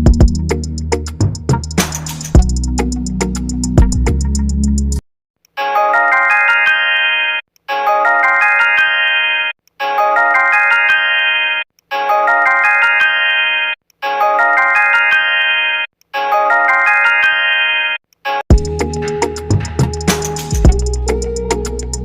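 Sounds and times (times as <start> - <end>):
phone ringtone melody: 5.6 - 18.8.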